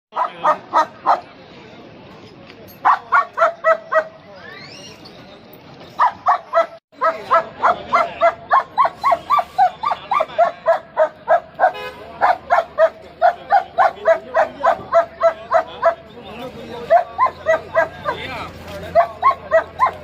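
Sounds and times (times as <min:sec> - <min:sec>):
dog yapping: 0:06.0 - 0:16.0, 0:16.8 - 0:18.2, 0:18.8 - 0:20.0.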